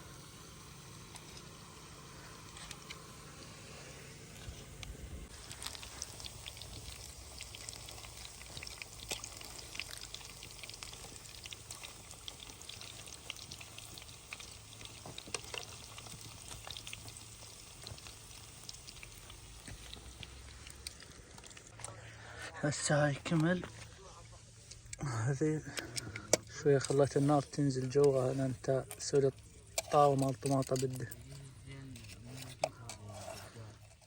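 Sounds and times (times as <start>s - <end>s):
tomatoes sizzling in a pan: 0.0s - 21.3s.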